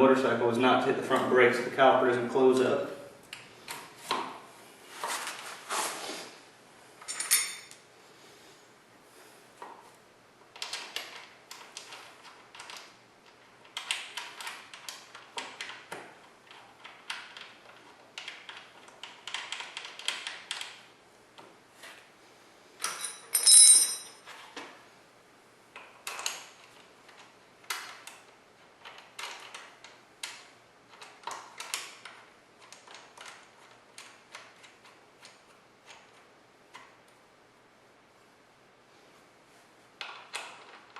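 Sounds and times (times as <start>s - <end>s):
tools and metal parts clicking: 7.0s - 7.8s, 22.8s - 24.2s
ringing metal clink: 7.1s - 7.7s, 22.9s - 24.2s.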